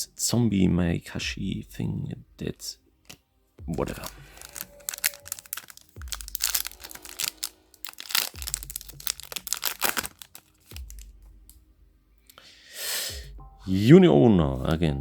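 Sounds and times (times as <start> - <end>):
cards being handled: 3.0 - 11.6
foil wrapper crinkling and tearing: 3.8 - 11.2.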